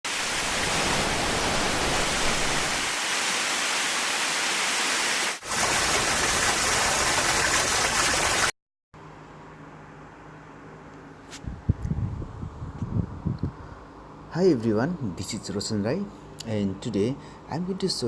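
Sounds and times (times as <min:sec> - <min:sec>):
waterfall rushing: 0:00.1 - 0:08.4.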